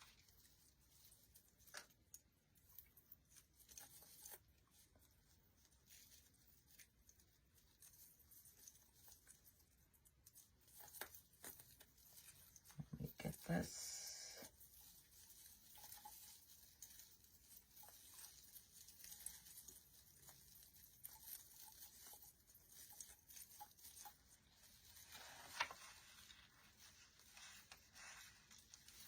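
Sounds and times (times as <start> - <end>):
rustling of artificial greenery: 0.0 - 29.0.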